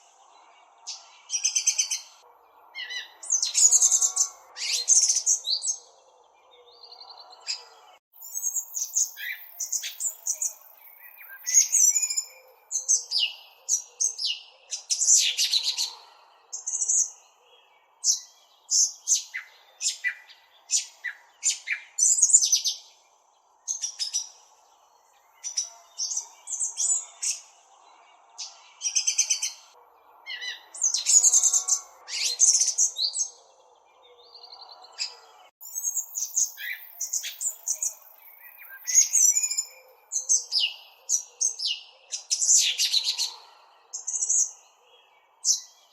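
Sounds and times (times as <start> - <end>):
small bird chirping: 2.8 - 5.9, 6.7 - 15.9, 23.7 - 24.5, 25.2 - 45.9.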